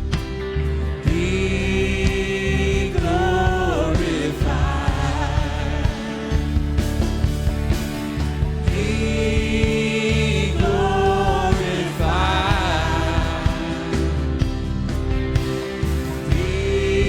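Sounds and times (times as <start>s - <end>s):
sustained instrumental backing: 0.0s - 17.0s
person singing long sliding notes: 1.1s - 6.6s, 8.7s - 14.4s.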